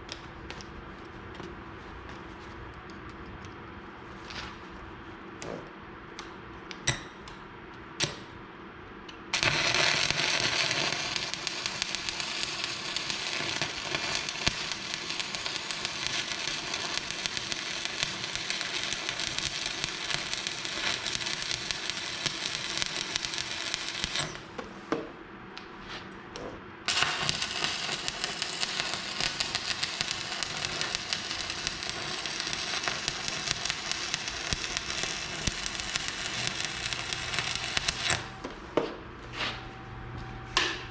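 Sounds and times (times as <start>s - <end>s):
welding arc crackling: 9.3s - 24.4s, 26.9s - 38.4s.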